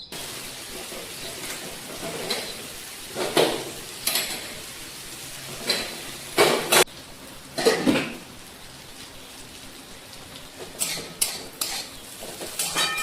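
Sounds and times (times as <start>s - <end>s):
food sizzling: 0.0s - 13.0s
utensil scraping a pan: 10.6s - 13.0s.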